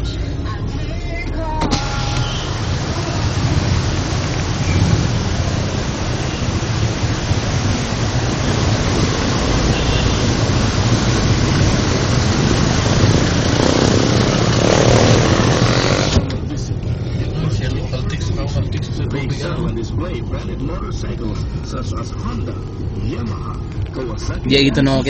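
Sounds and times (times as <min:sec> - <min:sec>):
vehicle road hiss: 0:00.0 - 0:16.3
vehicle low rumble: 0:00.0 - 0:25.0.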